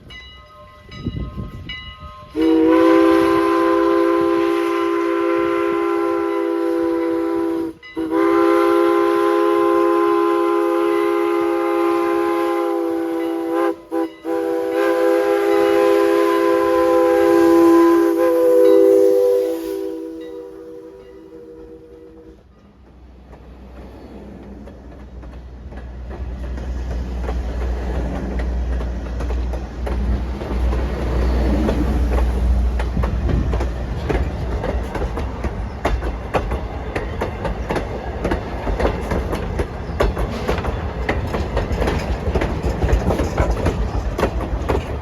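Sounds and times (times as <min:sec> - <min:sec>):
steam locomotive whistle: 0:02.2 - 0:22.5.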